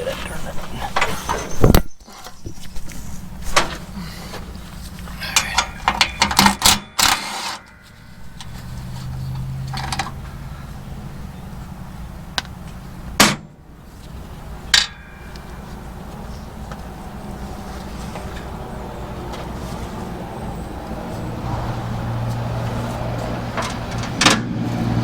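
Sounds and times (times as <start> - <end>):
metal tools clicking and knocking: 5.3 - 7.5.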